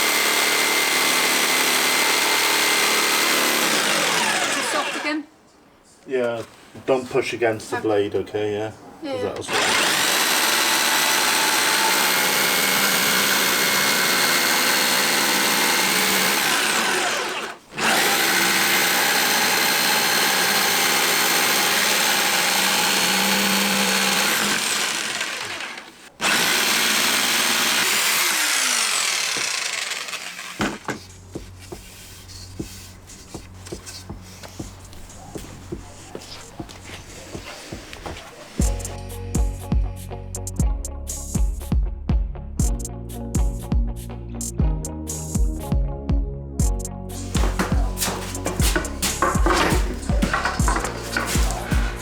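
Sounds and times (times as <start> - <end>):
electric saw cutting wood: 0.0 - 5.2, 9.5 - 31.0, 47.2 - 52.0.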